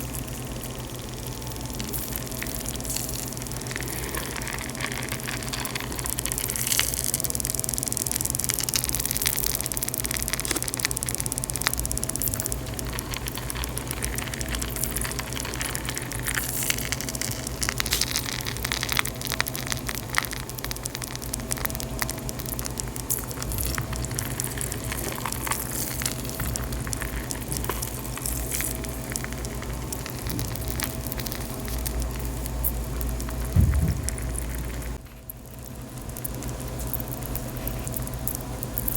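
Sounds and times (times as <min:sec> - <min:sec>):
chalk fizzing and crackling in water: 0:00.1 - 0:38.9
low thump: 0:33.4 - 0:35.0.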